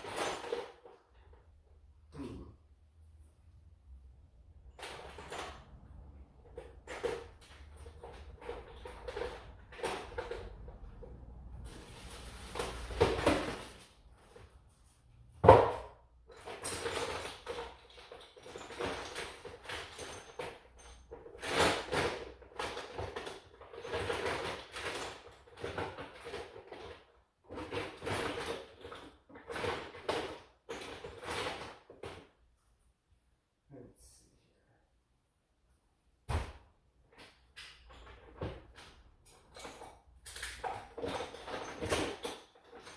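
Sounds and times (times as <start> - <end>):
rummaging hard objects: 6.4 - 14.6, 37.9 - 42.9.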